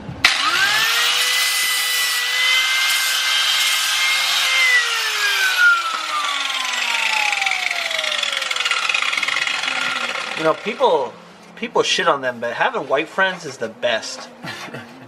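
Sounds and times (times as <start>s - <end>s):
angle grinder cutting steel: 0.2s - 11.2s.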